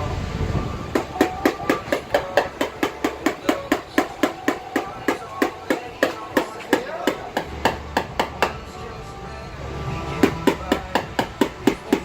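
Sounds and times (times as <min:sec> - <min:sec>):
tool tapping on car body panel: 0:00.9 - 0:08.6, 0:10.2 - 0:12.0.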